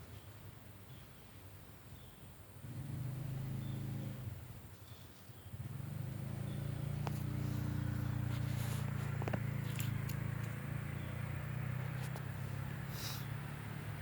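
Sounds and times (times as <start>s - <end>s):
motor engine humming: 5.6s - 14.0s.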